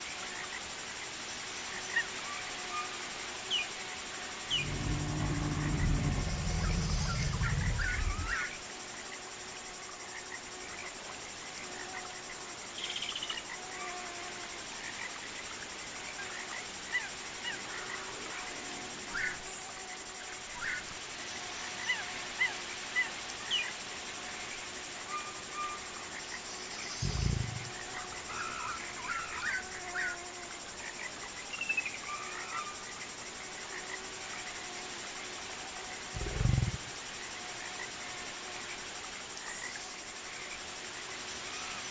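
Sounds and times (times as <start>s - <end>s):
insects droning: 0.0s - 41.9s
deep animal growls: 4.4s - 8.6s, 27.0s - 27.9s, 36.1s - 37.0s.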